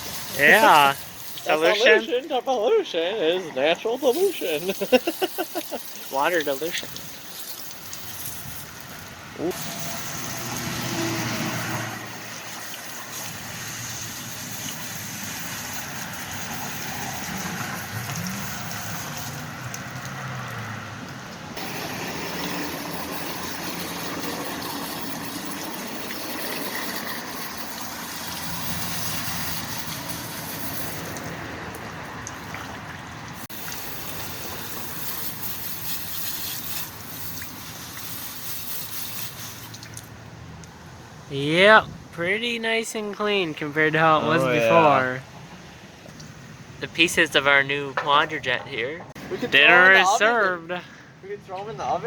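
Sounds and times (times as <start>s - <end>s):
water spraying and splashing: 0.0s - 2.4s, 3.6s - 40.6s.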